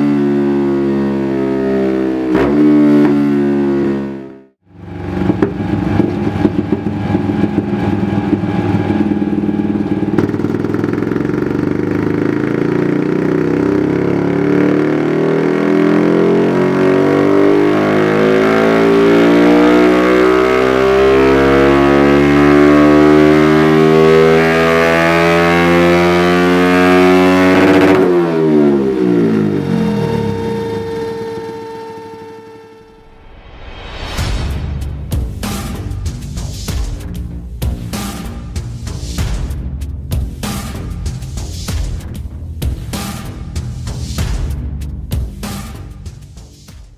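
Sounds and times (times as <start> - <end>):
motorcycle engine revving on a dyno: 0.0 - 33.0.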